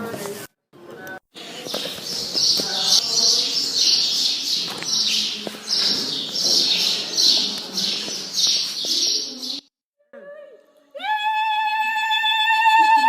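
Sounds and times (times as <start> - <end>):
pet birds chirping: 1.4 - 9.7.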